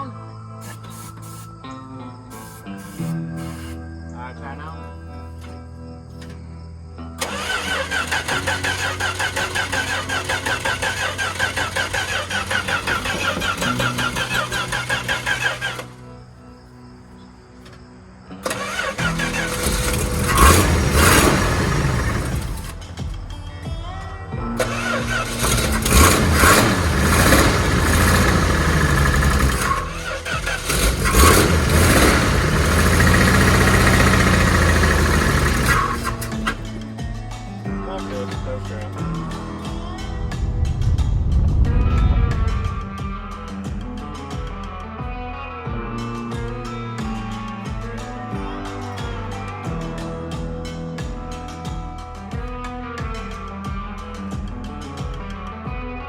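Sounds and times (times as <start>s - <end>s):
engine starter cranking: 7.2s - 16.0s, 18.4s - 23.0s, 24.6s - 36.8s.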